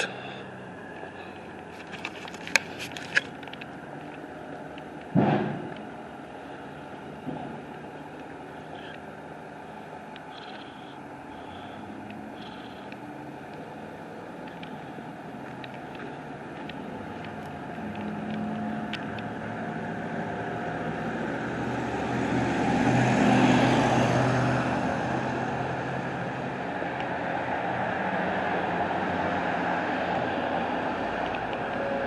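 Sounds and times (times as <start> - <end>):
motor vehicle passing: 0.0 - 32.0.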